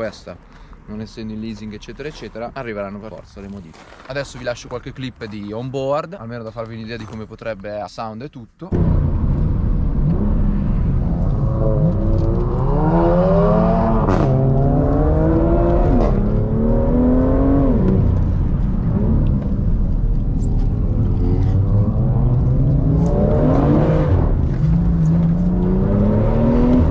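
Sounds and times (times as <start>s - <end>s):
car engine accelerating: 8.7s - 26.9s
exhaust crack on upshift: 8.7s - 26.9s.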